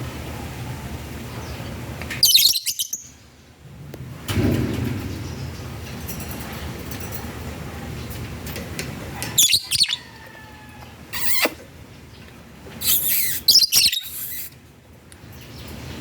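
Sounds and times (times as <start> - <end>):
lovebirds chirping: 9.3 - 10.1, 11.2 - 14.6.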